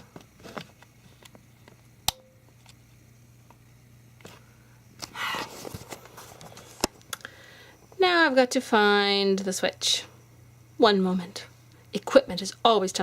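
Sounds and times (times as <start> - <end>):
power strip clicks and handling: 0.2 - 2.8.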